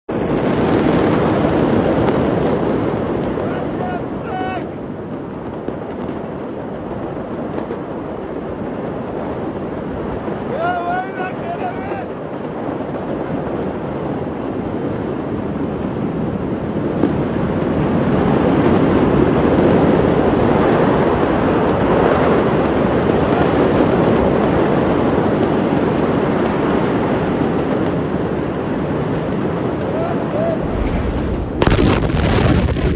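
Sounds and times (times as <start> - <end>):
faint crackles: 0.1 - 32.9
steady rushing noise: 0.1 - 32.9.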